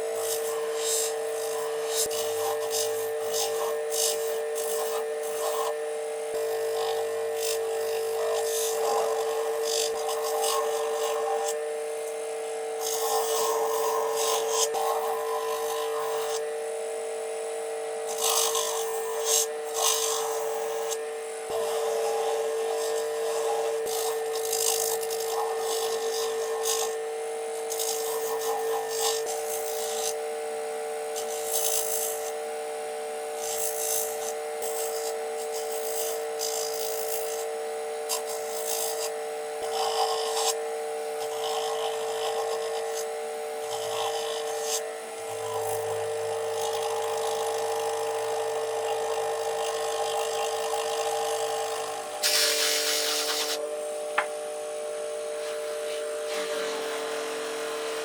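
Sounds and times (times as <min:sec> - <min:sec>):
polishing motor whining: 0:00.0 - 0:32.6, 0:33.4 - 0:58.0
buffing wheel rubbing metal: 0:52.2 - 0:53.6, 0:55.4 - 0:58.0.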